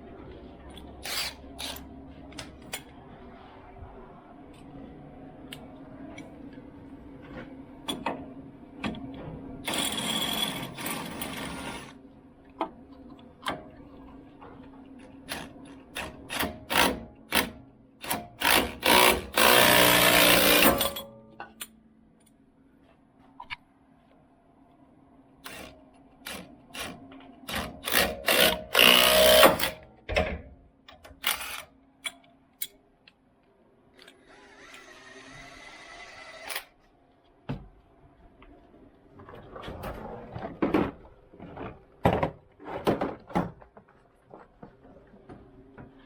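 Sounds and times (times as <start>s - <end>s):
power tool whirring: 1.0s - 1.8s, 18.4s - 20.9s, 27.5s - 29.8s, 31.2s - 31.6s, 34.0s - 36.7s.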